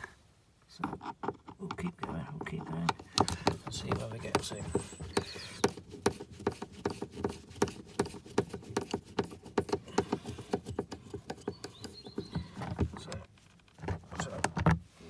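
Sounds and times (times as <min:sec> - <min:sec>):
screwdriver clicking and scratching: 0:02.6 - 0:12.6.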